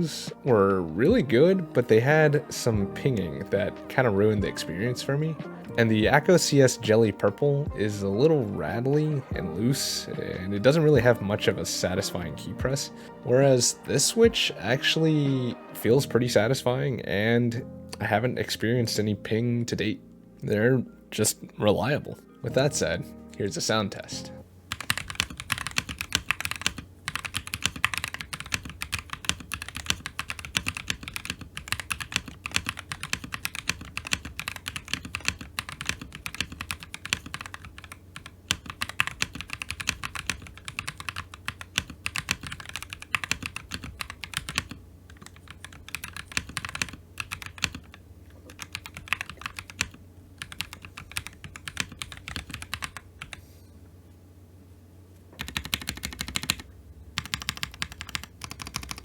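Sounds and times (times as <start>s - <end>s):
mechanical keyboard typing: 24.7s - 53.4s, 55.4s - 56.6s, 57.2s - 59.0s.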